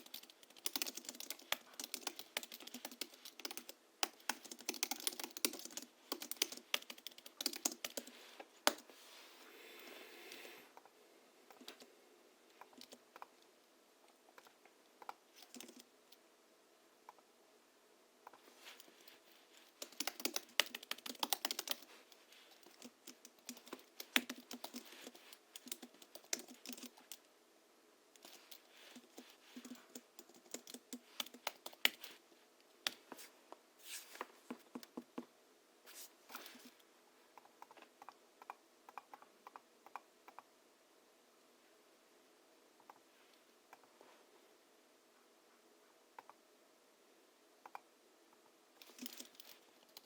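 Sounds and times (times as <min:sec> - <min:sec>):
keyboard typing: 0:00.0 - 0:08.8, 0:14.3 - 0:16.2, 0:19.7 - 0:21.9, 0:22.6 - 0:27.3, 0:28.2 - 0:32.1, 0:48.8 - 0:50.0.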